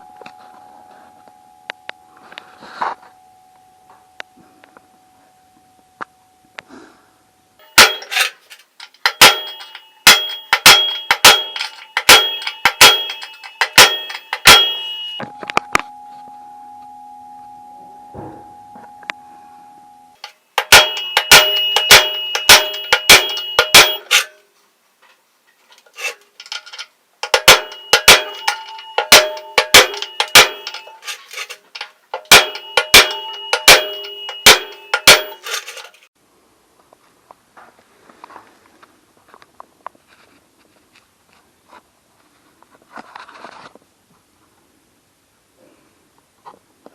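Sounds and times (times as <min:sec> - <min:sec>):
hammer blows on steel: 0:07.6 - 0:15.4, 0:20.2 - 0:24.4, 0:27.2 - 0:36.0.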